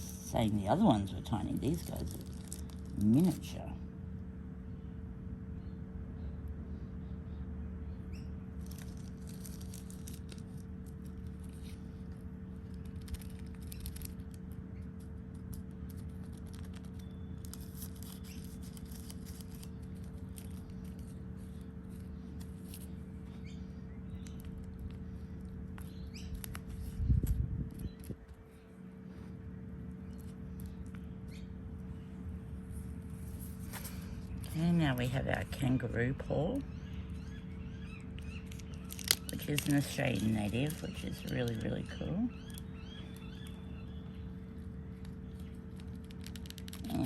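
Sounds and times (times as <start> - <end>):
steady low hum: 0.0 - 47.0
paper packet rustling: 0.8 - 3.4, 8.6 - 23.0, 38.2 - 42.6, 44.9 - 47.0.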